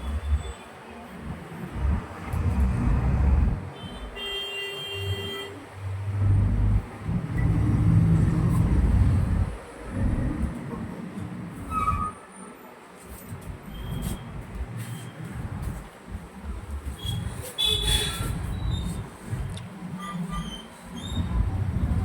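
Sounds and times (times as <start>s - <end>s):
road traffic rumble: 0.0s - 22.0s
vehicle horn: 3.8s - 5.6s, 17.6s - 18.4s.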